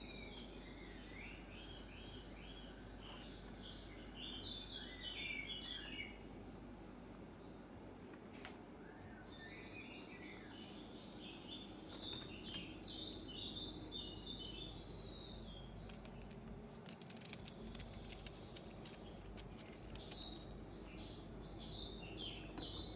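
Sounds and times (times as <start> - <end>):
songbirds chirping: 0.0 - 22.9
faint clicks: 15.8 - 20.9.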